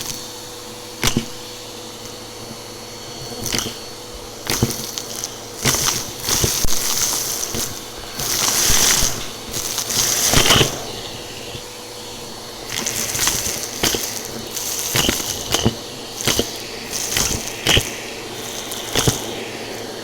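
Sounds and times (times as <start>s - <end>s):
vacuum cleaner motor hum: 0.0s - 20.0s
debris crackling being sucked up: 4.5s - 20.0s.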